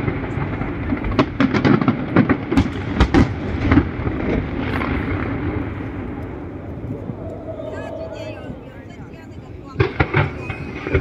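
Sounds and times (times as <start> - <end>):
fireworks bangs: 0.0 - 11.0
low rumble: 5.8 - 10.1.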